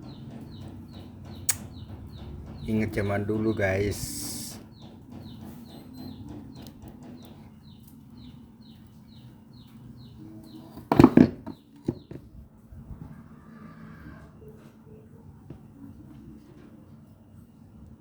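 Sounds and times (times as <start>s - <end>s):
small bird chirping: 0.0s - 12.2s.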